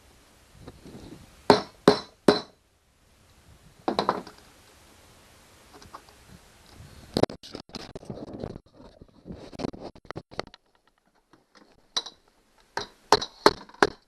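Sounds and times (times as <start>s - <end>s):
sharp hard knocks: 1.5s - 2.6s
clatter of small knocks: 3.9s - 4.4s, 9.6s - 14.0s.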